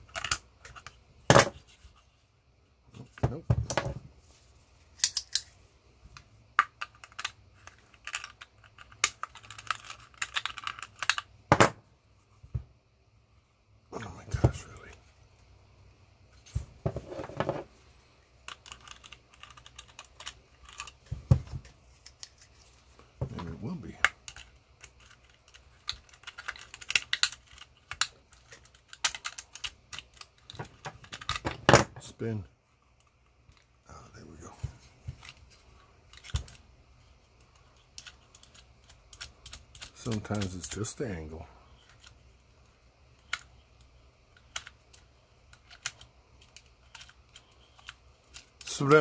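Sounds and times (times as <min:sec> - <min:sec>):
metal parts clicking and tapping: 0:06.6 - 0:11.6, 0:24.0 - 0:31.8.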